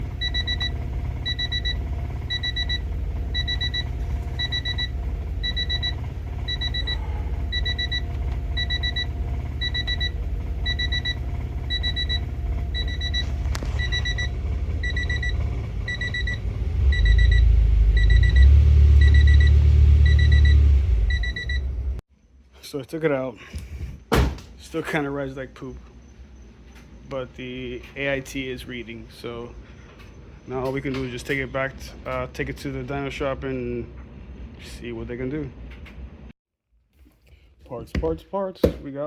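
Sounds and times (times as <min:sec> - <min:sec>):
car engine and road rumble: 0:00.0 - 0:22.0
high electronic warning beep: 0:00.2 - 0:21.7.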